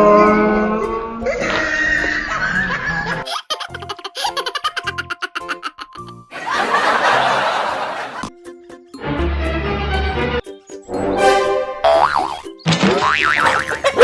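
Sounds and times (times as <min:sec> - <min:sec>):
people laughing: 0:01.4 - 0:08.3, 0:13.8 - 0:14.0.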